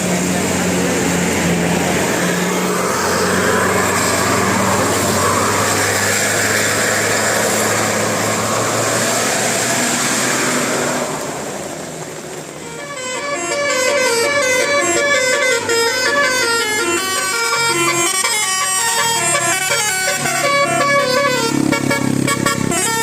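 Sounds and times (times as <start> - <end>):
heavy vehicle passing: 0.0 - 23.0
multi-tone horn melody: 12.6 - 23.0.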